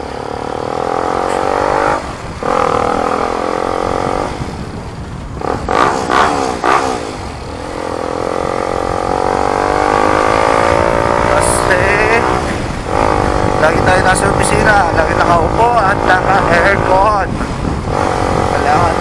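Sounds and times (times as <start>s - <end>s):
motorcycle engine accelerating: 0.0s - 14.5s
low rumble: 1.2s - 5.8s.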